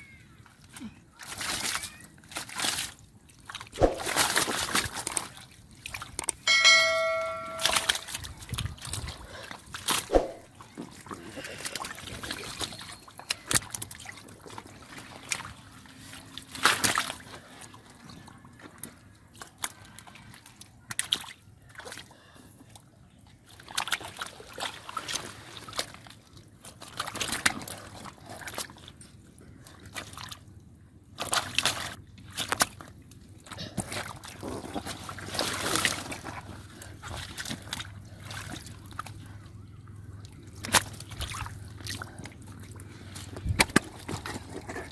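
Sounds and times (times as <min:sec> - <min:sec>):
shallow water splashing: 0:01.2 - 0:18.4.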